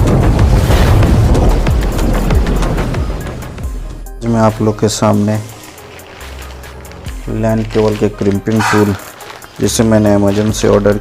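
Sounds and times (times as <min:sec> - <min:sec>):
electronic music with heavy bass: 0:08.4 - 0:09.8.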